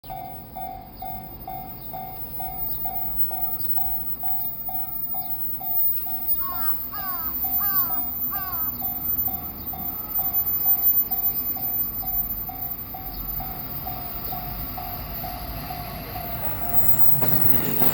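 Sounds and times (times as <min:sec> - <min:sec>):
level-crossing electronic bell: 0:00.0 - 0:17.9
crow cawing: 0:06.4 - 0:08.8.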